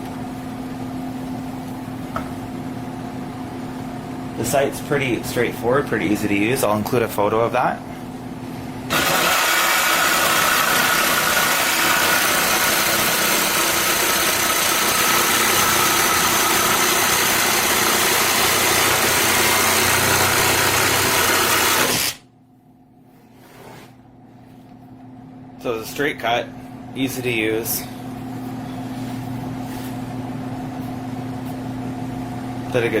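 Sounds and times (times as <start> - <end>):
jigsaw cutting: 8.9 - 22.2.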